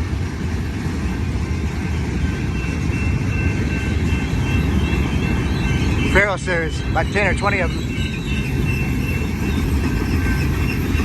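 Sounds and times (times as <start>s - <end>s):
train cars rumbling on rails: 0.0s - 11.0s
faint high squeal: 6.8s - 11.0s.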